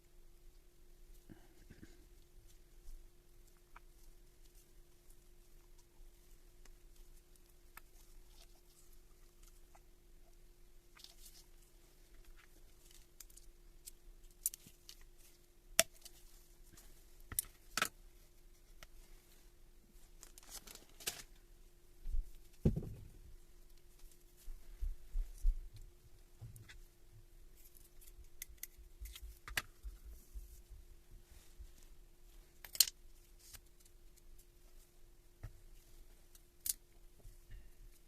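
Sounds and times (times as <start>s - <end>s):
faint steady hum: 0.0s - 38.0s.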